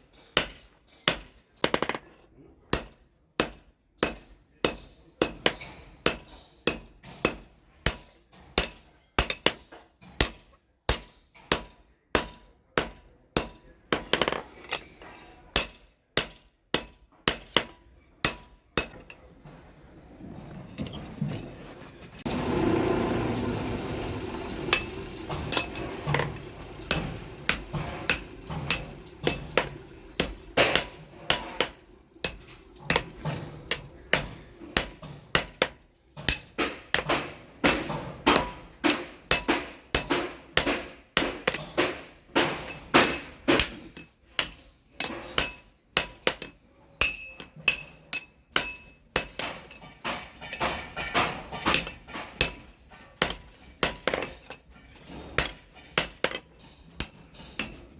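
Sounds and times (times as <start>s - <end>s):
hammer striking steel on anvil: 0.2s - 2.0s, 2.7s - 14.9s, 15.5s - 19.2s, 22.3s - 54.6s, 55.4s - 57.9s.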